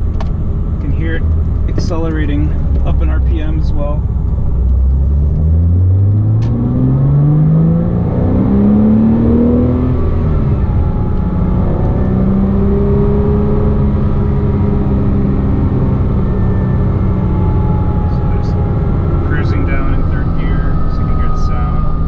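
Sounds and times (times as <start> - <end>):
car engine revving: 0.0 - 22.0
high whistling whine: 8.0 - 22.0.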